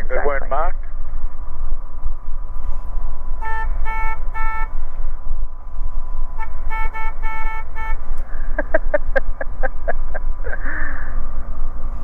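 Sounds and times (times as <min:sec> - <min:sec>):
light aircraft engine drone: 0:00.0 - 0:12.0
short horn toots: 0:02.6 - 0:05.2, 0:06.3 - 0:08.3.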